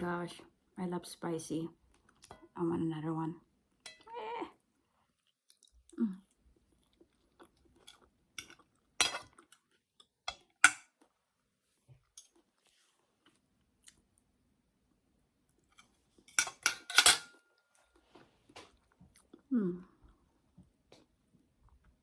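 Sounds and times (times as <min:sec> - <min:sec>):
person chewing: 0:06.6 - 0:09.8
cutlery clicking on a plate: 0:16.3 - 0:17.3.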